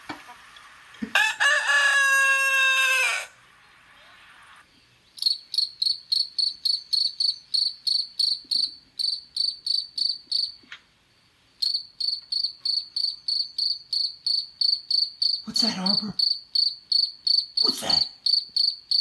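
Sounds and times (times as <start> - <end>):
cricket chirping: 5.2 - 10.7, 11.6 - 19.0.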